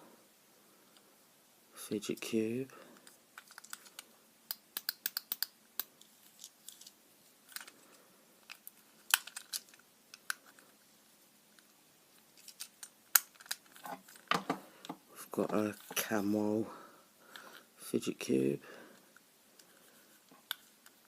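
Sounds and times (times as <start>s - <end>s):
fidget cube plastic clicks: 3.0s - 6.5s, 8.4s - 10.6s.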